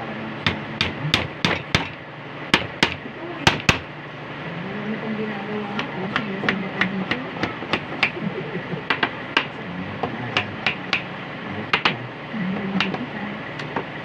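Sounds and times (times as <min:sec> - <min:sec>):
hammer knocking on wood: 0:00.4 - 0:02.0, 0:02.6 - 0:03.9, 0:11.8 - 0:12.0.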